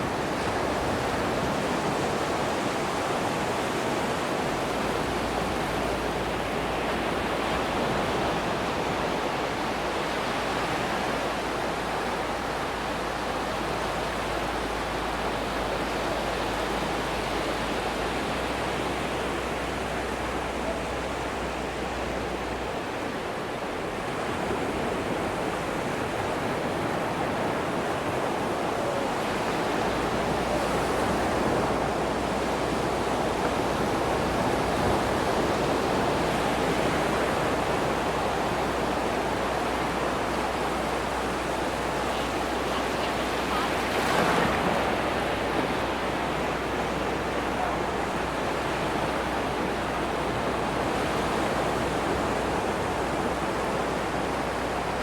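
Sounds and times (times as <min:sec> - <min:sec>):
ocean surf washing onto beach: 0:00.0 - 0:55.0
wave breaking: 0:29.0 - 0:54.1.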